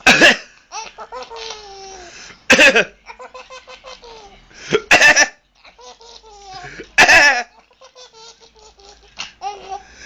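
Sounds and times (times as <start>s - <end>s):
man coughing: 0.0s - 0.5s
baby giggling: 0.7s - 4.4s, 5.0s - 9.9s.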